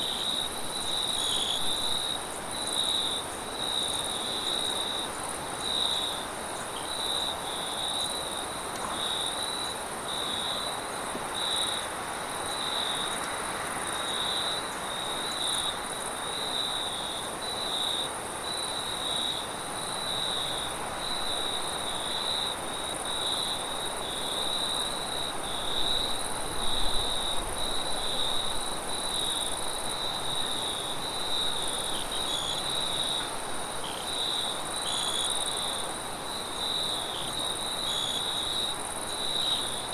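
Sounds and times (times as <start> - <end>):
crickets chirping: 0.0 - 39.9
wind hiss: 0.0 - 39.9
high insect trill: 13.9 - 39.9.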